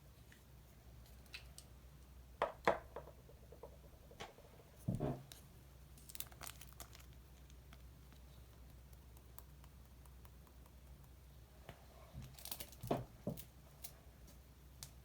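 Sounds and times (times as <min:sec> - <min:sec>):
clicks and crinkles: 0:06.0 - 0:08.6, 0:12.2 - 0:15.0.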